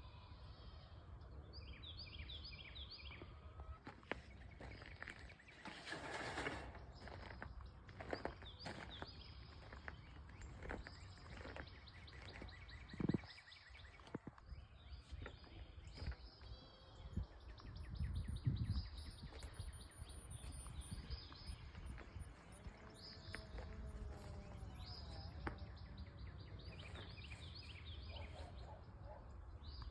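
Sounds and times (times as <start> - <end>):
small birds chirping: 0.0 - 29.9.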